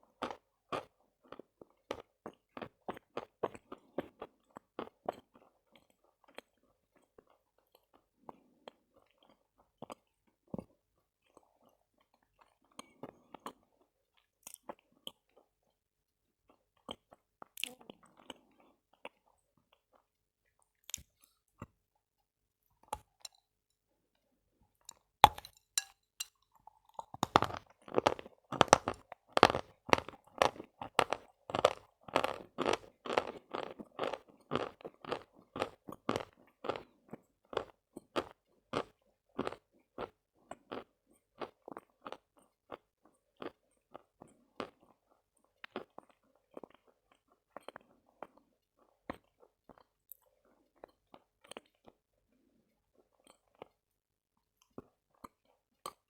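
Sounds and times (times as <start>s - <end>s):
person chewing chalk crunching: 24.9s - 42.8s.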